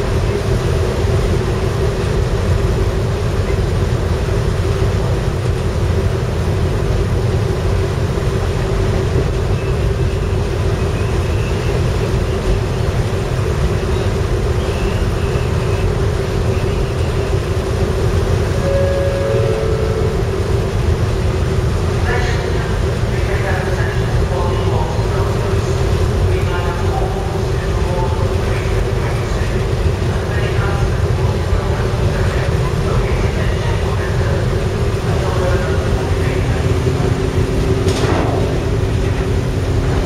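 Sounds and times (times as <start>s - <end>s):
constant hum: 0.0s - 40.0s
ferry machinery rumble: 0.0s - 40.0s
two-note tone: 18.6s - 21.0s.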